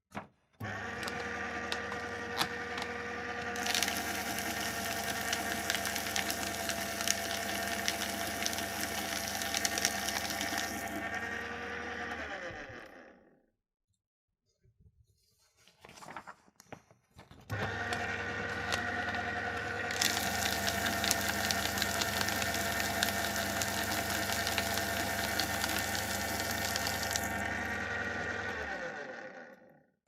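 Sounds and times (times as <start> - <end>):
paper shredder motor humming: 0.1 - 13.4, 17.5 - 29.9
shredder cutters crunching paper: 0.2 - 13.2, 17.5 - 29.8.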